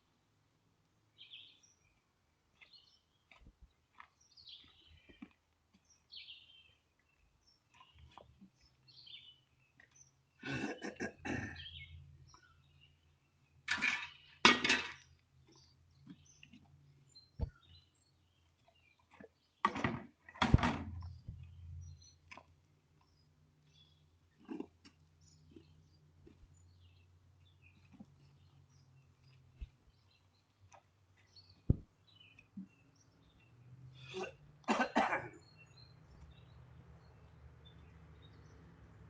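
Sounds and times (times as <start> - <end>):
small birds chirping: 1.1 - 19.7, 20.9 - 39.0.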